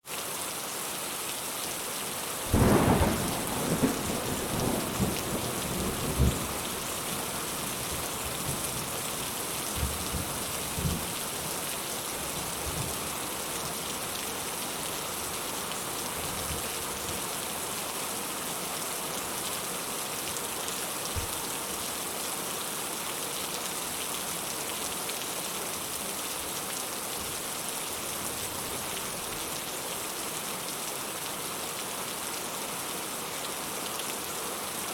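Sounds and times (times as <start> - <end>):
heavy rain: 0.0 - 34.9
thunder rumbling: 2.5 - 8.9.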